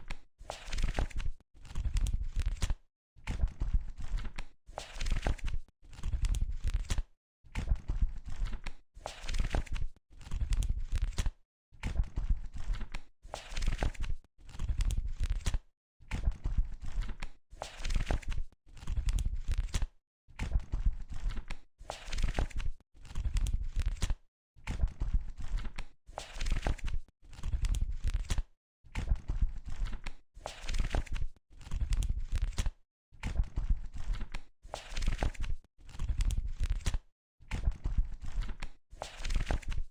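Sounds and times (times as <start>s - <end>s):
book pages turning: 0.5s - 2.7s, 29.8s - 32.7s, 34.0s - 37.0s, 38.3s - 39.8s.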